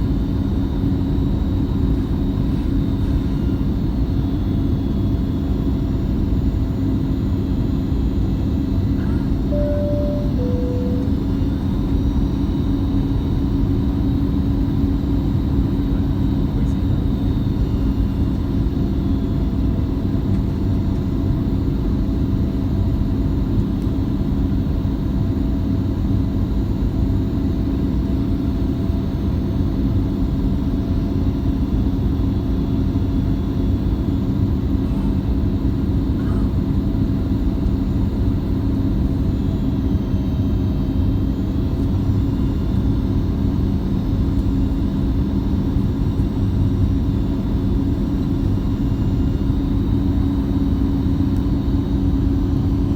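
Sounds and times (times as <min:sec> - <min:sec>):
airplane cabin engine rumble: 0:08.4 - 0:13.5
low even hum: 0:08.6 - 0:13.3.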